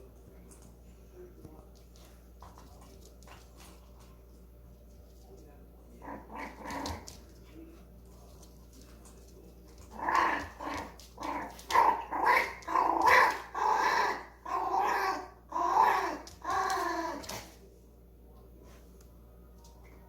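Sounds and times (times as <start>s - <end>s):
dog growling: 6.0s - 7.3s, 9.8s - 17.5s.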